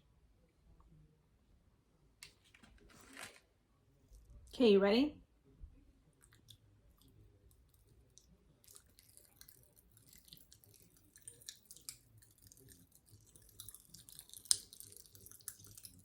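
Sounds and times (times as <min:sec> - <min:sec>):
popping candy crackling: 0:07.6 - 0:16.0.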